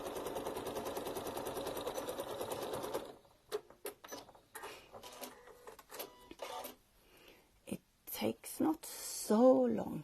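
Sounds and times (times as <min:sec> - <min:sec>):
sewing machine stitching: 0:00.0 - 0:04.3.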